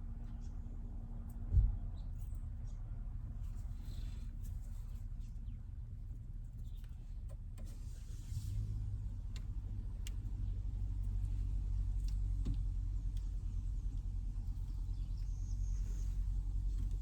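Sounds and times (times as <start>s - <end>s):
steady low rumble: 8.2s - 17.0s.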